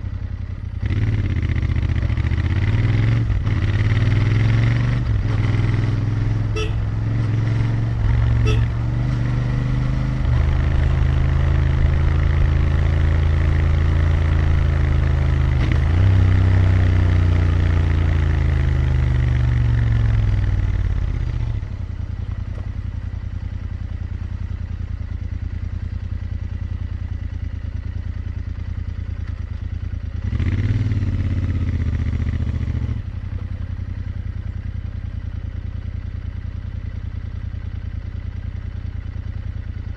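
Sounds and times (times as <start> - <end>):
motorcycle engine idling: 0.0 - 0.8, 6.3 - 7.2, 7.8 - 9.0, 20.2 - 30.3, 31.1 - 39.9
motorcycle engine under load: 0.0 - 39.9
throttle blip: 8.4 - 8.8.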